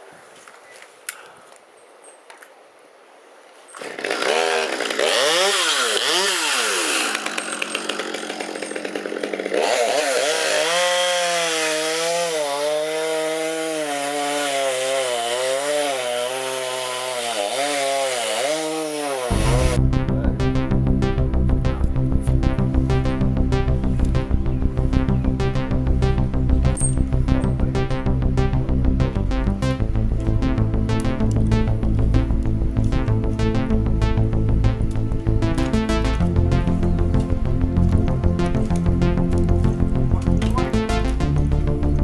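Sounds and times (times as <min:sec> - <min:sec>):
chainsaw revving and cutting wood: 0:03.8 - 0:19.9, 0:30.3 - 0:42.0
electronic music: 0:19.3 - 0:42.0.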